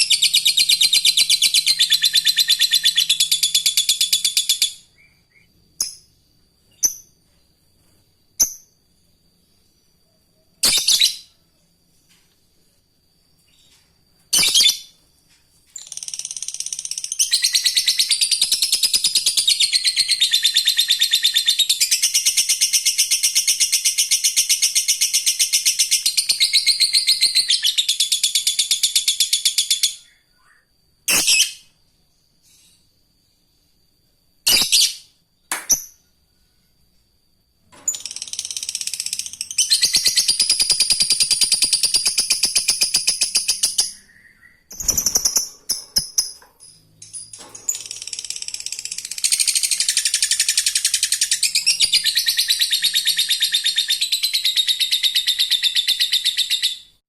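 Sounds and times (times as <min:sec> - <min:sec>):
sharp bird calls: 0:38.1 - 0:46.4.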